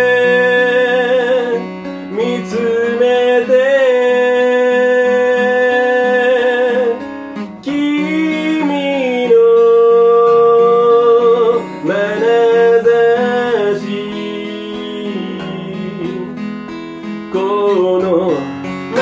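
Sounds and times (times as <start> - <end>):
guitar accompaniment: 0.0 - 19.0
person singing slow ballad: 0.0 - 19.0.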